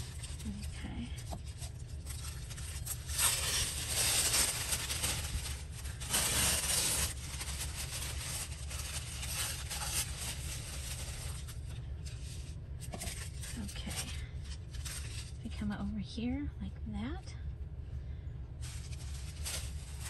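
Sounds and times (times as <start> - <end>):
steady low hum: 0.0 - 20.0
paper rustling and sliding: 2.0 - 15.4, 18.6 - 20.0.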